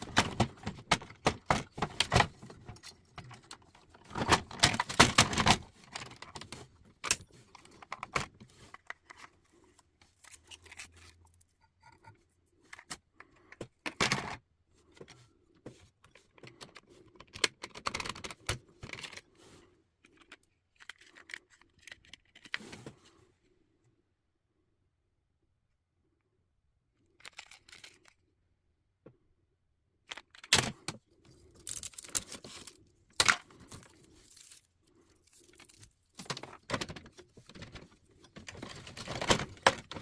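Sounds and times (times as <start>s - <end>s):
typewriter parts clicking and rattling: 16.6s - 19.2s.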